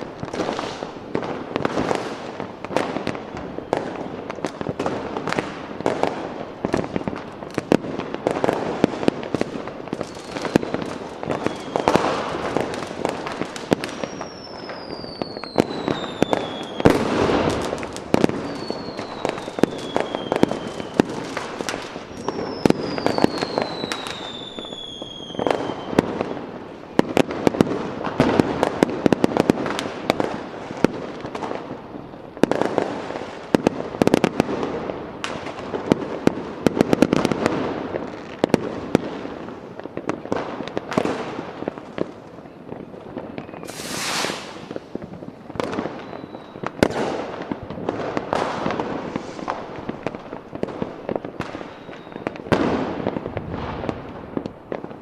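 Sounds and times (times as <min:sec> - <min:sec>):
fireworks bangs and crackling: 0:00.0 - 0:55.0
falling firework whistles: 0:09.9 - 0:26.4, 0:43.2 - 0:47.2, 0:48.3 - 0:49.7, 0:51.4 - 0:54.0
short hissing rush: 0:43.7 - 0:44.7.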